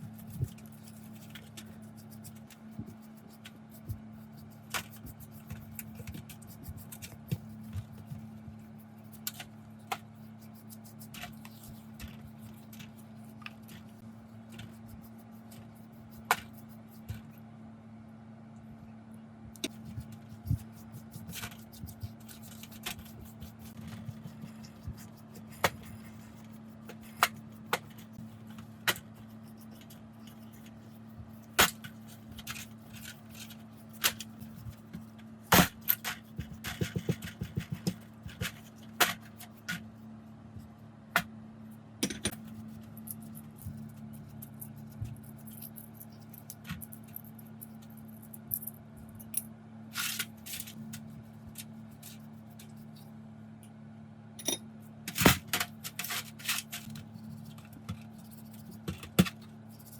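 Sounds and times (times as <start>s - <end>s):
steady low hum: 0.0s - 59.9s
metal tools clinking: 54.4s - 54.7s.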